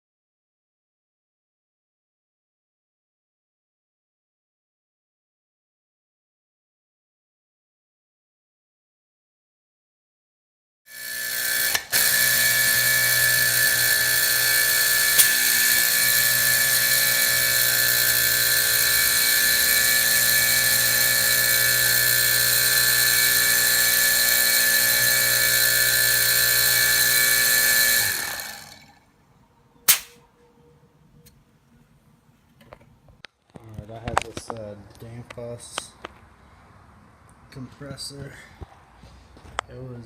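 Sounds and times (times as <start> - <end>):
electric motor whining: 10.9 - 28.6
sharp click: 15.2 - 15.7, 29.9 - 30.2.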